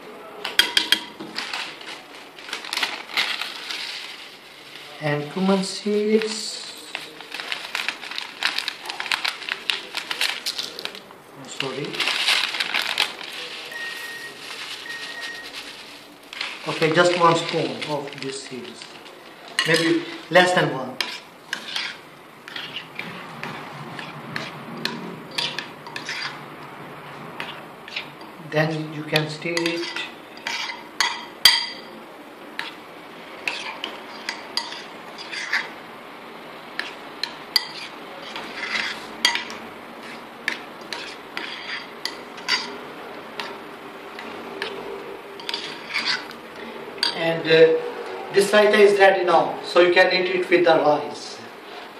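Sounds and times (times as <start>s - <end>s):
spoon scraping bowl: 19.5s - 26.5s, 27.4s - 31.7s, 33.4s - 35.8s, 36.7s - 42.8s, 44.2s - 47.3s.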